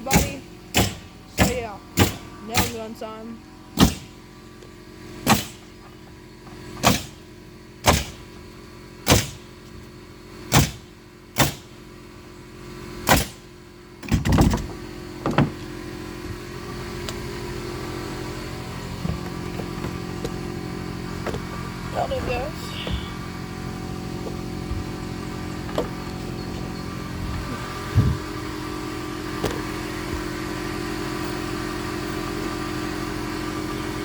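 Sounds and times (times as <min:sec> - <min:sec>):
steady mechanical hum: 0:00.0 - 0:34.0
nail gun firing: 0:00.1 - 0:02.8, 0:03.8 - 0:04.2, 0:05.2 - 0:05.7, 0:06.8 - 0:07.2, 0:07.8 - 0:08.3, 0:09.0 - 0:09.5, 0:10.5 - 0:11.7, 0:13.0 - 0:14.4.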